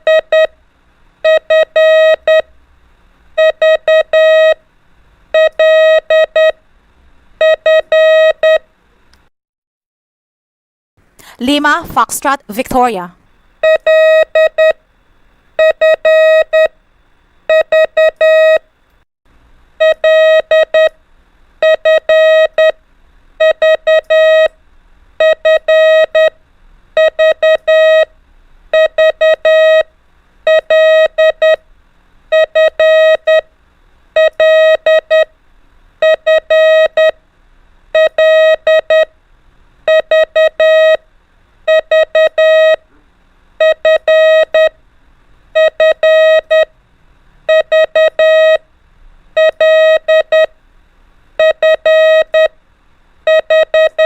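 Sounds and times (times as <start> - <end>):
morse code beeps: 0.0 - 0.5, 1.2 - 2.5, 3.4 - 4.6, 5.4 - 6.6, 7.4 - 8.6, 13.6 - 14.8, 15.6 - 16.7, 17.5 - 18.6, 19.8 - 20.9, 21.6 - 22.8, 23.4 - 24.5, 25.2 - 26.3, 27.0 - 28.1, 28.7 - 29.9, 30.5 - 31.6, 32.3 - 33.4, 34.2 - 35.3, 36.0 - 37.2, 38.0 - 39.1, 39.9 - 41.0, 41.7 - 42.8, 43.6 - 44.7, 45.6 - 46.7, 47.5 - 48.6, 49.4 - 50.5, 51.4 - 52.5, 53.3 - 54.0.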